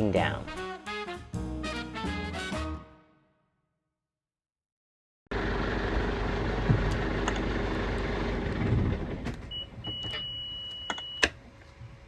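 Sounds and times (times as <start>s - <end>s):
engine running: 5.3s - 9.5s.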